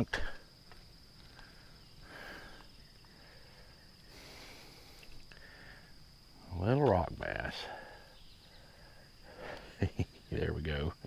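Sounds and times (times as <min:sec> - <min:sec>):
high-pitched insect drone: 0:00.0 - 0:11.0.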